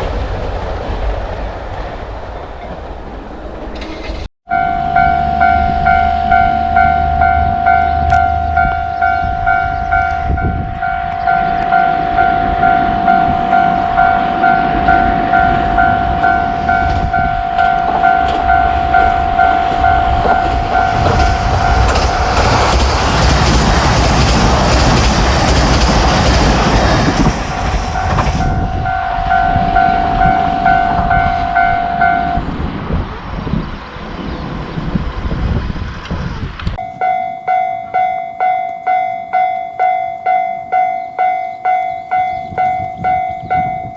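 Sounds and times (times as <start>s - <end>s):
train passing over crossing: 0.0s - 43.9s
level crossing bell ringing: 4.5s - 21.8s, 28.0s - 32.4s, 36.8s - 43.9s.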